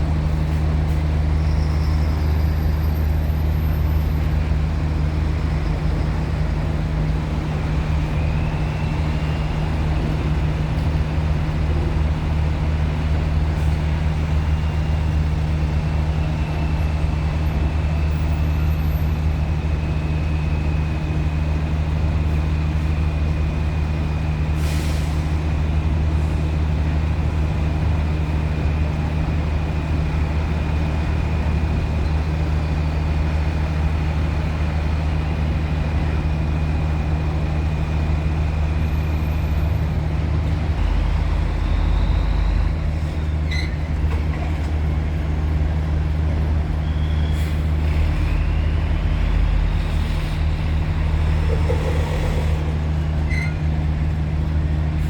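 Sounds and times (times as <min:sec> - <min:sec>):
diesel engines idling: 0:00.0 - 0:55.0
air brake hiss: 0:24.6 - 0:25.4, 0:47.1 - 0:50.5.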